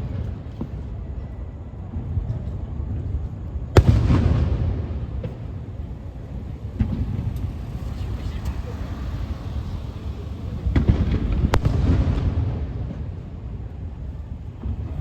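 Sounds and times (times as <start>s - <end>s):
low rolling rumble and echo: 0.0s - 15.0s
small firework crack: 3.7s - 15.0s.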